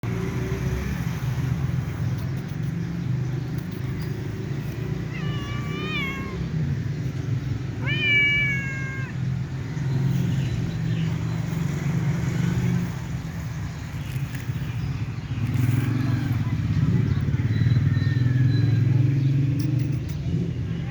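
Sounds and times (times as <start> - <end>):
cat meowing: 4.8 - 6.7, 7.6 - 9.5.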